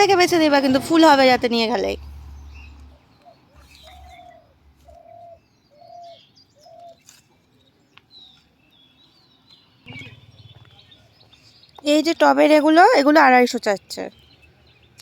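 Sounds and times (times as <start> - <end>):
small birds chirping: 0.0 - 15.0
bird hooting low cooing notes: 2.5 - 7.0.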